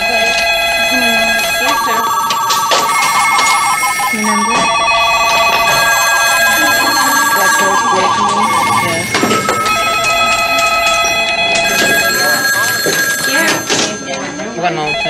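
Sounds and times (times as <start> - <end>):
telephones ringing: 0.0 - 15.0
murmur of voices: 3.7 - 15.0.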